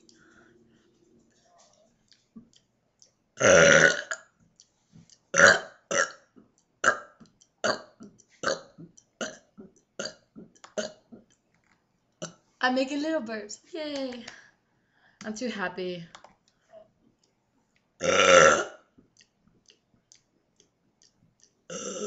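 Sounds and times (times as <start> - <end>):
woman burping: 3.4 - 4.2, 5.4 - 6.2, 18.0 - 18.8, 21.7 - 22.0.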